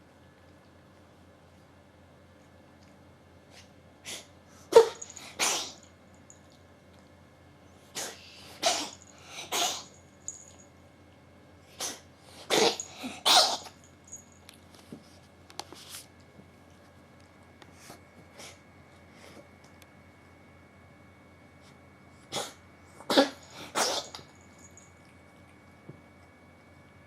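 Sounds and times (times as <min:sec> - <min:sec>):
cat sneezing: 0:04.0 - 0:05.9, 0:07.9 - 0:10.0, 0:11.7 - 0:13.8, 0:22.3 - 0:24.3.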